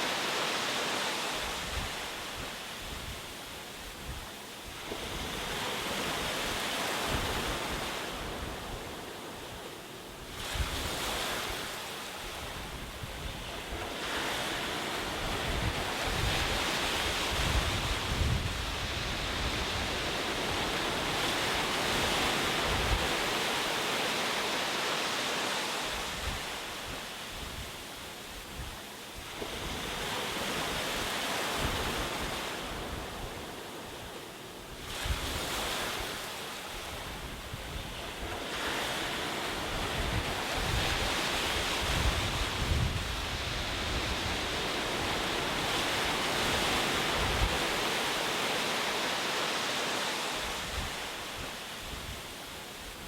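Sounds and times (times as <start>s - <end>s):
sea waves breaking: 0.0s - 27.6s, 29.1s - 53.0s
wind rumbling on microphone: 10.2s - 23.6s, 36.8s - 48.2s.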